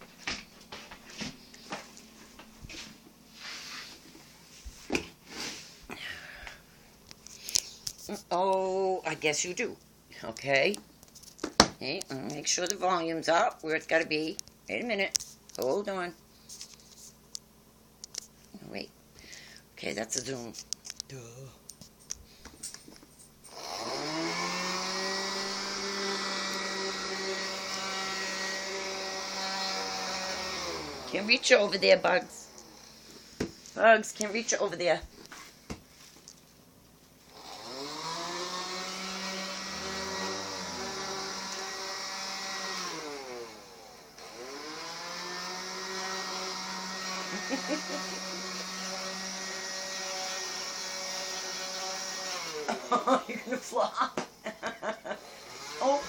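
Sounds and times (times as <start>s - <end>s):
vacuum cleaner motor humming: 23.5s - 33.9s, 37.3s - 53.7s, 55.0s - 56.0s.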